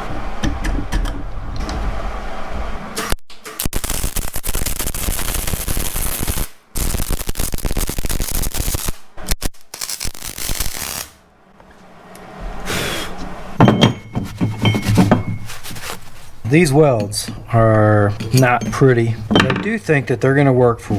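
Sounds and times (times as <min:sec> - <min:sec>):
welding arc crackling: 0:03.6 - 0:11.2
metal knocks: 0:13.6 - 0:15.6, 0:18.1 - 0:19.8.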